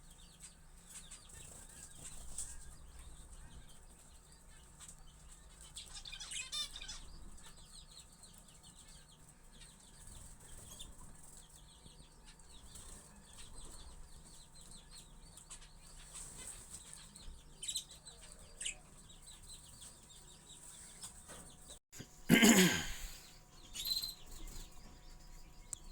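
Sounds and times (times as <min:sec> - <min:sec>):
budgerigars chattering: 0:05.6 - 0:07.7.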